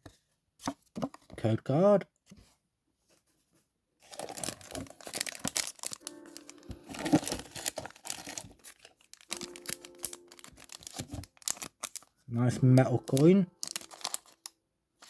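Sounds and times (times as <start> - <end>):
plastic wrapping crinkling and tearing: 4.0 - 14.6.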